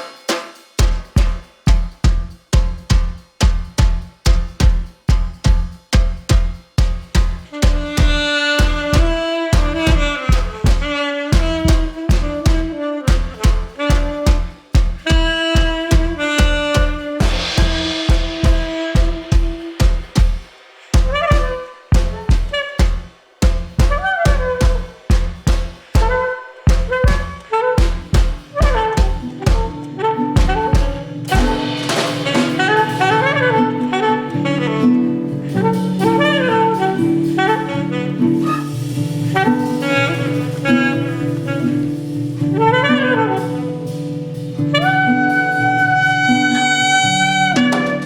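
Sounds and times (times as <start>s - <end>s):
drum strikes and thumps: 0.0s - 34.0s, 47.6s - 48.0s
alto saxophone phrases: 7.4s - 23.1s, 23.9s - 48.0s.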